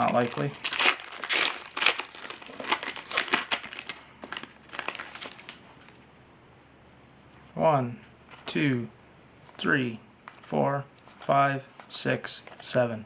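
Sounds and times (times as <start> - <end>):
wrapper tearing and crinkling: 0.0 - 6.0.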